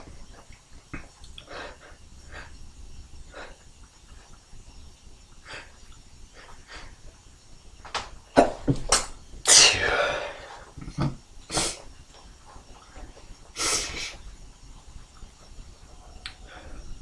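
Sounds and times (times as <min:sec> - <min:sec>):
person sneezing: 0:09.5 - 0:10.4.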